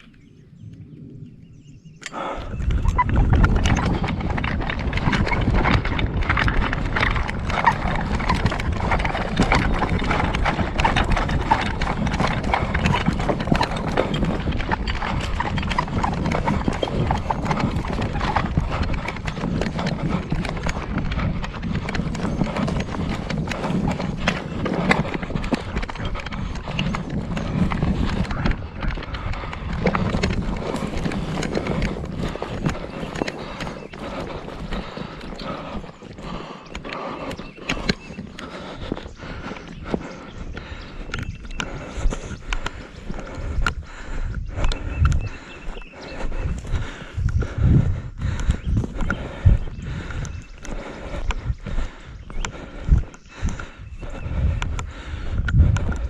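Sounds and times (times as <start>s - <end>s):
running footsteps on rough ground: 0.0s - 56.0s.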